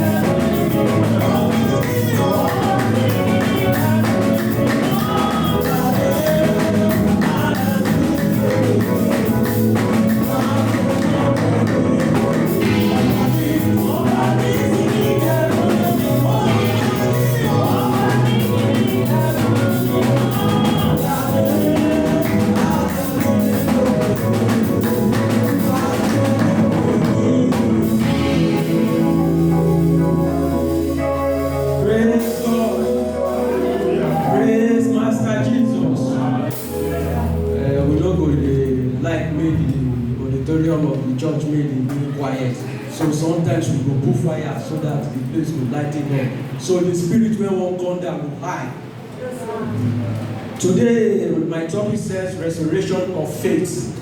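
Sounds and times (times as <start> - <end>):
drum kit: 0.0 - 41.1
gospel singing: 0.0 - 41.4.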